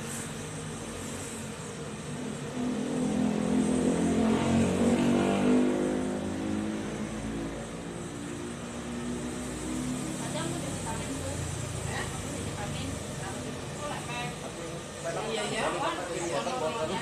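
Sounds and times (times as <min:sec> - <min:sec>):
vehicle engine passing by: 0:02.2 - 0:13.3.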